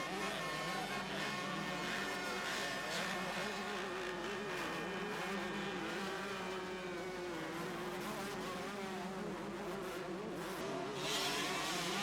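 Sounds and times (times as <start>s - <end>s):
motocross bikes racing: 0.0s - 12.0s.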